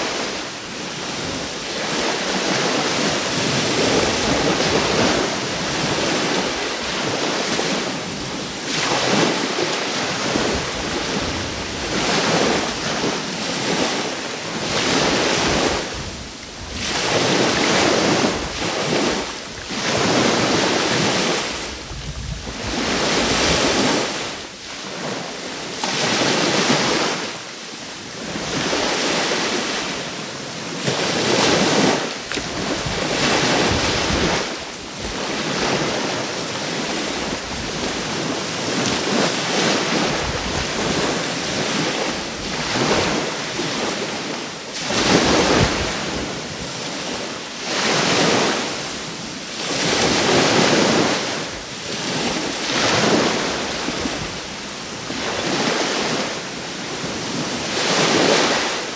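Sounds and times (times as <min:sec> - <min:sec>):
small waves breaking on shore: 0:00.0 - 0:58.9
wind buffeting microphone: 0:14.6 - 0:24.4, 0:31.5 - 0:43.3.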